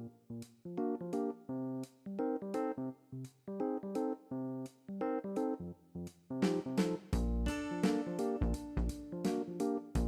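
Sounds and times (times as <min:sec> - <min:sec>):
light keyboard tune: 0:00.8 - 0:01.5, 0:02.1 - 0:02.8, 0:03.5 - 0:04.3, 0:04.9 - 0:05.6, 0:06.4 - 0:10.0.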